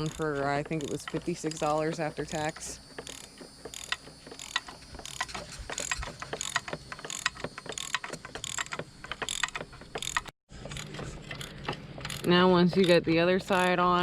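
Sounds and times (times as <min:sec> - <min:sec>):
ratchet wrench clicking: 0:03.0 - 0:13.8.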